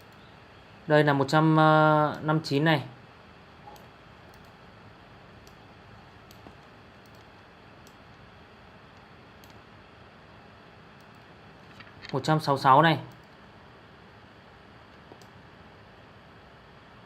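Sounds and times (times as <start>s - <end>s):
room tone hiss: 0.0s - 17.0s
computer mouse clicks: 3.7s - 4.6s, 6.3s - 8.0s, 8.9s - 9.6s.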